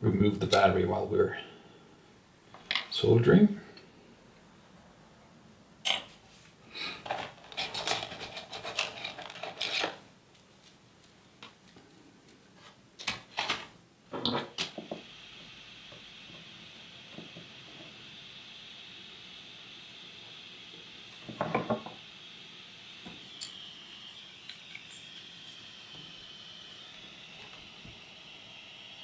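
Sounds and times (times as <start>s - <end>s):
faint steady hiss: 0.0s - 29.0s
hand tools clicking and scraping: 7.0s - 10.0s.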